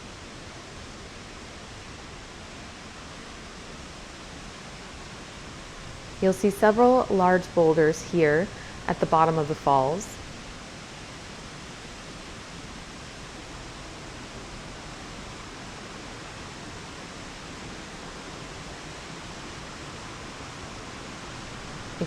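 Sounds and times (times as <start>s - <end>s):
waterfall roaring: 5.5s - 10.5s, 20.0s - 22.0s.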